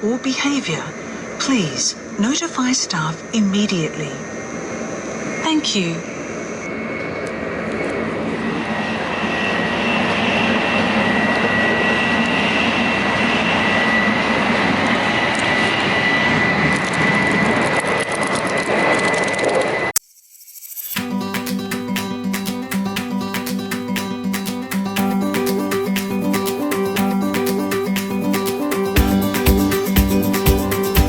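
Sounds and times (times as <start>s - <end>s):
high whine: 20.0s - 31.0s.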